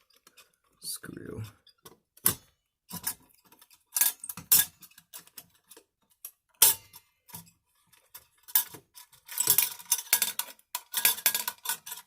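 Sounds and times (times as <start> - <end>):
metal scraping rattle: 6.6 - 12.0.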